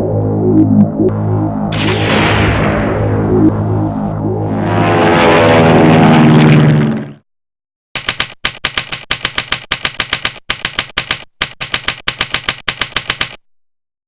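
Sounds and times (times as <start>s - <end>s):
typewriter keystrokes: 8.0s - 13.4s.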